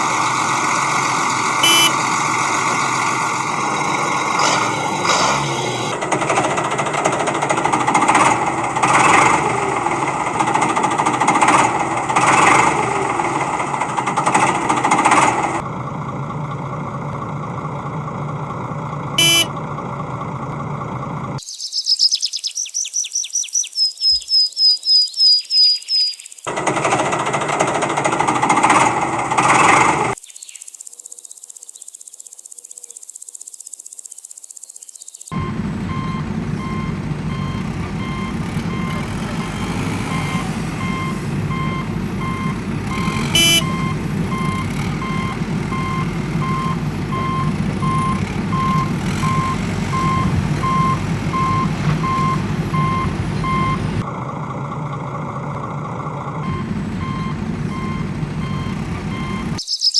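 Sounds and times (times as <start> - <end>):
engine running: 0.0 - 21.4, 26.2 - 30.2, 35.3 - 59.6
vehicle reversing alarm beeping: 1.4 - 2.8, 19.2 - 19.6, 35.2 - 54.1, 56.4 - 59.9.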